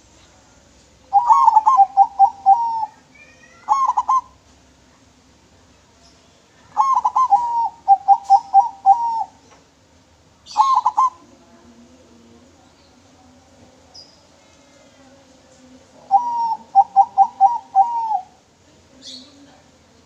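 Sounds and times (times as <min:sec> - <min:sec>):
dove cooing song: 0:01.1 - 0:03.0, 0:03.6 - 0:04.4, 0:06.7 - 0:09.4, 0:10.5 - 0:11.4, 0:16.0 - 0:18.4.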